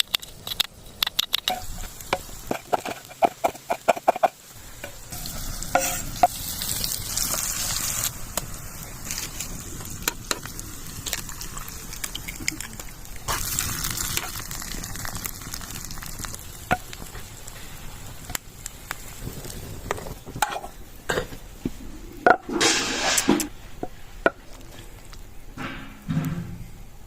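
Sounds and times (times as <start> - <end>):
utensil clicking and knocking: 0.0 - 4.3
food sizzling in a pan: 1.5 - 23.4.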